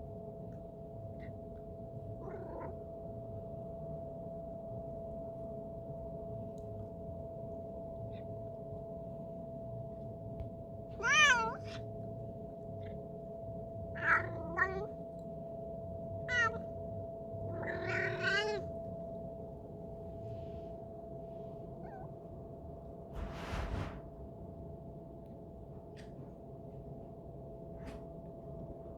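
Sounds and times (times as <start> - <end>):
cat meowing: 11.0 - 11.8, 14.0 - 14.9, 16.3 - 16.7, 17.5 - 18.7.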